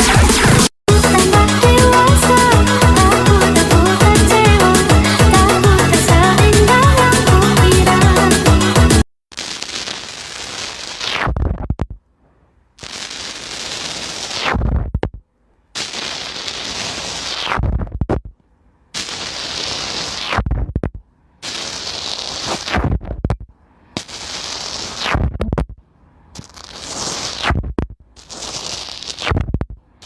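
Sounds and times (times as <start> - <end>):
background music: 0.0 - 9.0.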